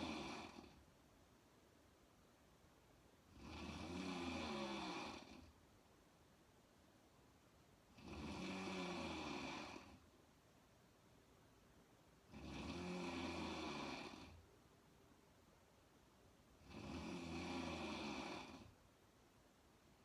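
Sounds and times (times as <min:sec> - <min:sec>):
woman snoring: 0:00.0 - 0:00.8, 0:03.3 - 0:05.6, 0:07.9 - 0:10.0, 0:12.3 - 0:14.4, 0:16.6 - 0:18.7
quiet breathing: 0:00.0 - 0:01.0, 0:03.2 - 0:05.6, 0:07.8 - 0:10.2, 0:12.2 - 0:14.6, 0:16.4 - 0:18.8.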